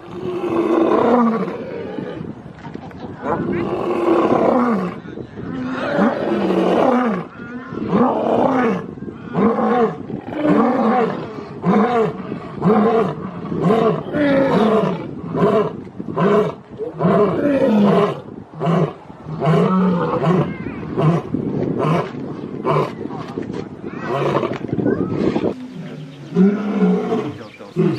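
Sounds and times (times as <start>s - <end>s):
lion roaring: 5.6s - 23.0s, 25.5s - 27.9s.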